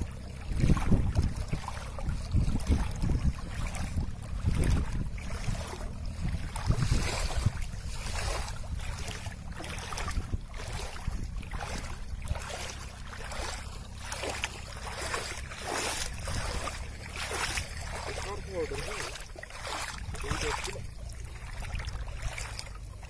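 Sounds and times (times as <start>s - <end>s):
water lapping and splashing: 0.0s - 23.0s
wind rumbling on microphone: 0.0s - 23.0s.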